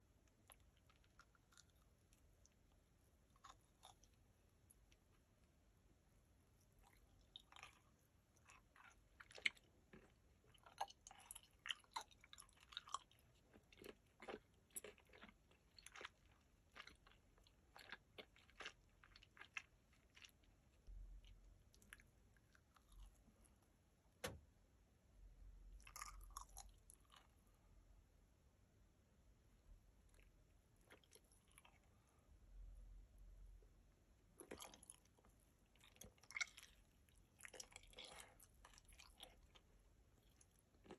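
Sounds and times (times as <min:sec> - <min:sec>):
chewing gummy candy: 0:00.0 - 0:05.3, 0:06.6 - 0:23.6, 0:25.8 - 0:27.6, 0:30.1 - 0:32.2, 0:34.4 - 0:40.9.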